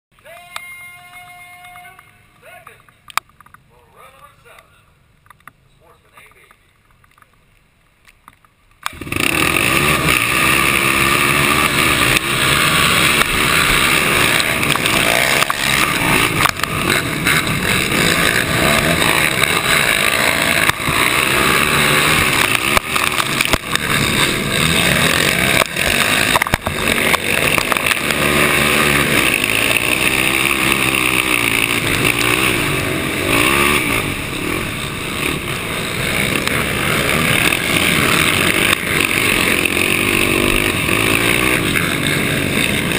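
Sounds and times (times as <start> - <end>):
atv engine revving: 8.8 - 42.9.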